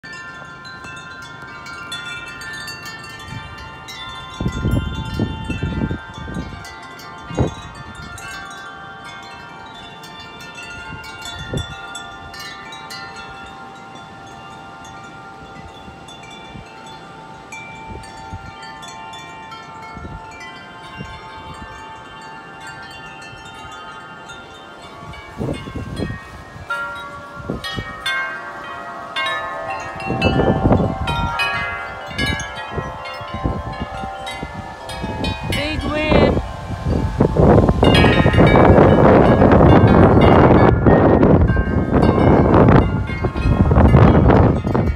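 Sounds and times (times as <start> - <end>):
wind chimes ringing: 0.0 - 44.9
wind buffeting microphone: 1.8 - 8.6, 10.5 - 12.5, 19.7 - 24.0, 24.8 - 44.9.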